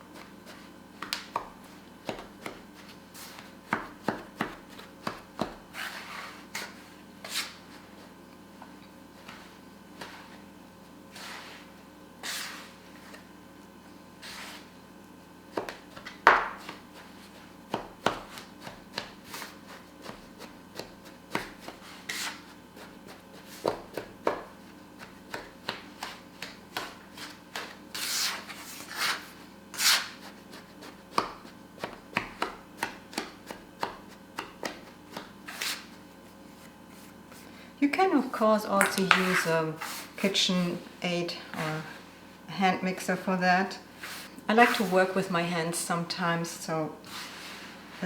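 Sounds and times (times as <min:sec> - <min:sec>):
scraper blade tapping surface: 0:38.8 - 0:40.0.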